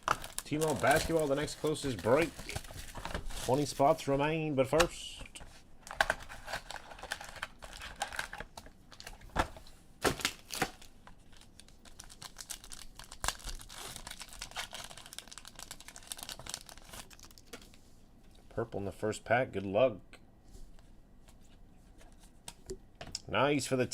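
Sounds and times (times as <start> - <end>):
foil wrapper crinkling and tearing: 0.0 - 4.0, 5.8 - 9.3, 10.1 - 17.7.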